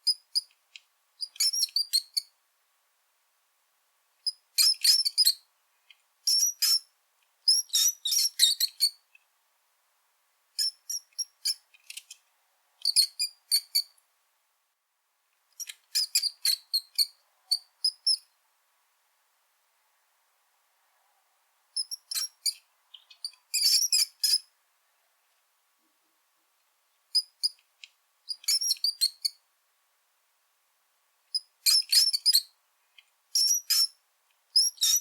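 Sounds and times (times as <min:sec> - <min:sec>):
rat squeaking: 0:01.2 - 0:02.2, 0:06.3 - 0:06.9, 0:07.5 - 0:09.0, 0:15.6 - 0:18.2, 0:21.8 - 0:24.5, 0:28.3 - 0:29.4, 0:31.4 - 0:32.4, 0:33.4 - 0:34.0, 0:34.6 - 0:35.0.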